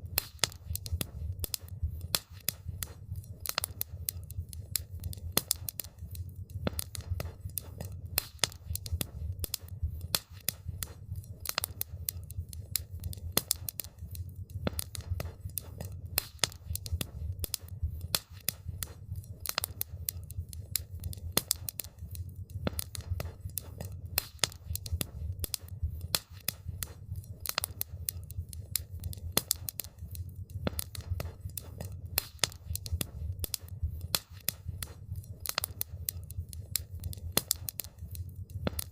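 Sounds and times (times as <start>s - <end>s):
steady low rumble: 0.0s - 24.2s
campfire crackling and popping: 0.0s - 38.9s.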